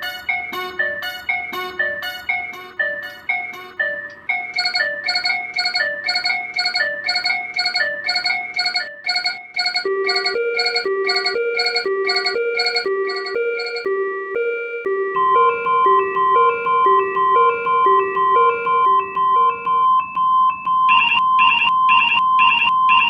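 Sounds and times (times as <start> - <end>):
lower-pitched crossing bells: 4.4 - 13.9
two-pitch crossing bells ringing: 4.6 - 13.9.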